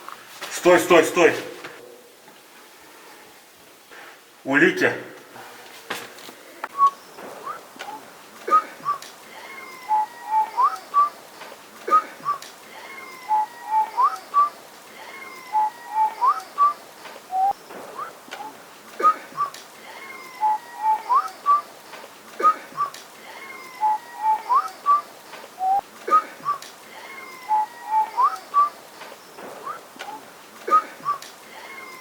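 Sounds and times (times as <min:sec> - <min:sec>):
person whistling: 0:06.7 - 0:07.6, 0:08.5 - 0:11.2, 0:11.9 - 0:18.1, 0:19.0 - 0:21.7, 0:22.4 - 0:28.8, 0:30.7 - 0:32.0.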